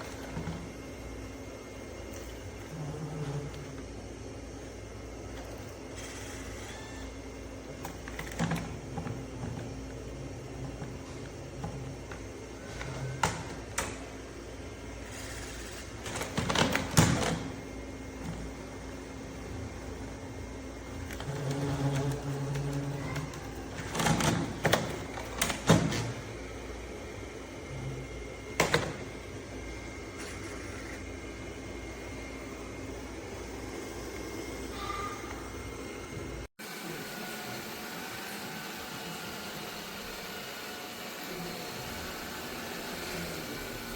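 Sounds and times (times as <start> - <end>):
low machine hum: 0.0 - 43.9
robot vacuum whirring: 14.9 - 19.4, 20.9 - 26.5.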